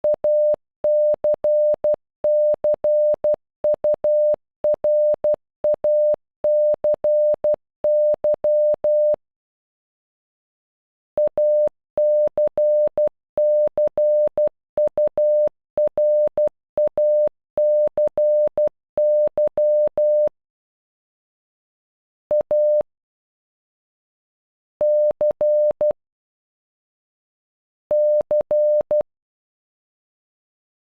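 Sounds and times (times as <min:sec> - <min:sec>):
morse code beeps: 0:00.0 - 0:09.2, 0:11.2 - 0:20.3, 0:24.8 - 0:26.0, 0:27.9 - 0:29.0.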